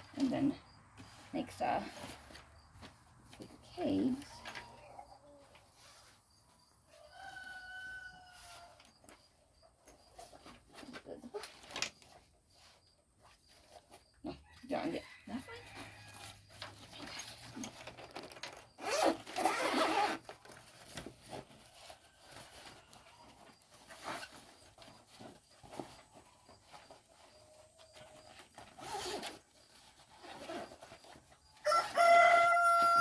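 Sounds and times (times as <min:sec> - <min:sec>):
zipper being pulled open: 0:17.1 - 0:20.5, 0:23.9 - 0:24.5, 0:28.6 - 0:29.5, 0:30.1 - 0:31.1.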